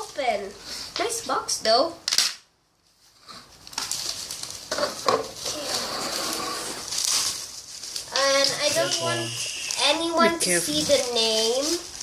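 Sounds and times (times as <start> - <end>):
voice fragments: 8.2 - 11.1.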